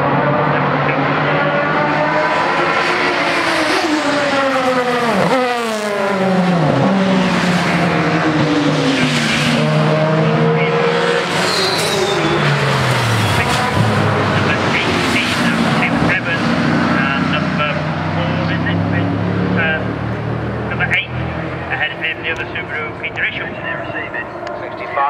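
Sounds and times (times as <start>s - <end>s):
racing cars passing at speed: 0.0s - 25.0s.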